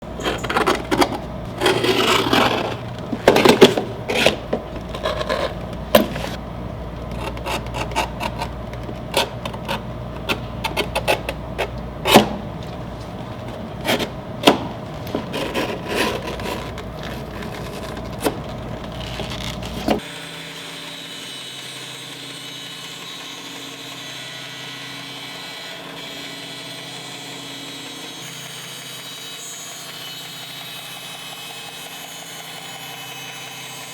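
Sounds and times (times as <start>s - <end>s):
saw cutting through leather: 0.0s - 6.4s, 7.0s - 30.3s
steady low hum: 0.0s - 20.0s
sharp knocks clicks and scrapes: 0.2s - 6.4s, 7.0s - 20.0s.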